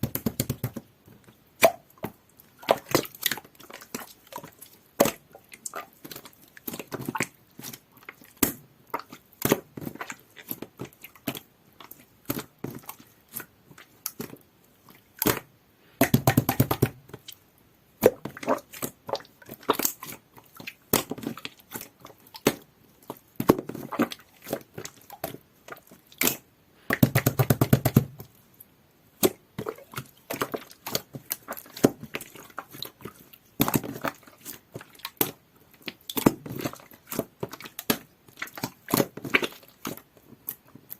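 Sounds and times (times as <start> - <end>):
rapid crackling of slime: 0.0 - 40.9
slime squished by hand: 18.0 - 28.2.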